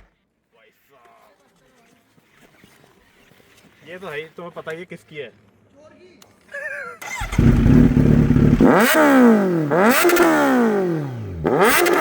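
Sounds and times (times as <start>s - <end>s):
motorcycle engine revving: 7.0s - 12.0s.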